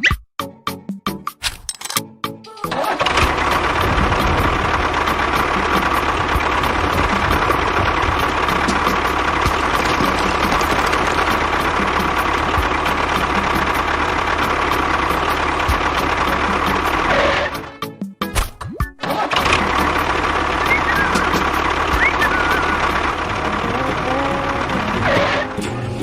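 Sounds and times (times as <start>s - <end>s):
small motor running: 5.6s - 12.5s.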